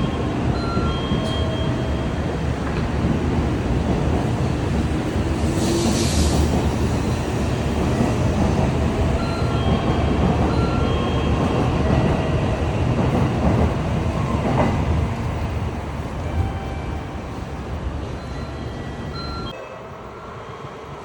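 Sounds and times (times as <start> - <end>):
high-speed train rushing: 0.0 - 21.0.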